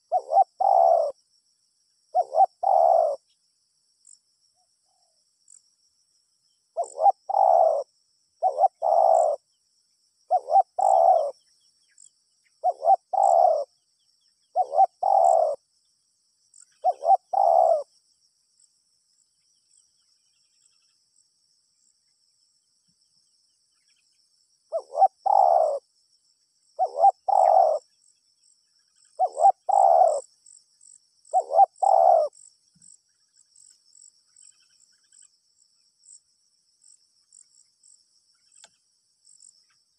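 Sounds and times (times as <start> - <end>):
dove cooing: 0.0 - 1.2, 2.1 - 3.2, 6.8 - 9.4, 10.3 - 11.4, 12.6 - 13.7, 14.5 - 15.6, 16.8 - 17.9, 24.7 - 25.8, 26.8 - 27.8, 29.1 - 30.3, 31.3 - 32.4
faint insect chirping: 0.0 - 39.9.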